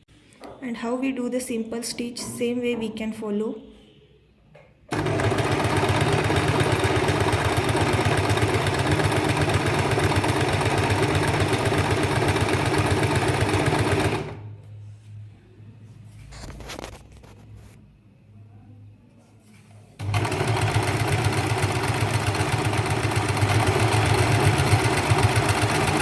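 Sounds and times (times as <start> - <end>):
sewing machine stitching: 4.9 - 14.5, 20.0 - 26.0.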